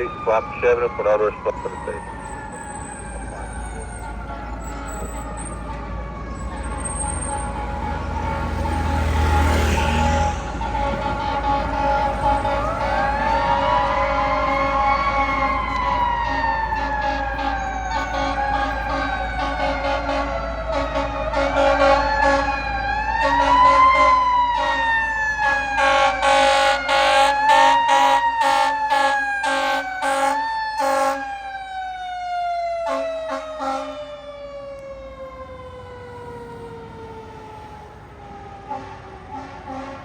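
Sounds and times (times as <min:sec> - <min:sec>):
fire truck siren wailing: 0:00.0 - 0:40.0
fire truck horn blasts: 0:03.6 - 0:31.4, 0:32.8 - 0:34.2, 0:38.6 - 0:40.0.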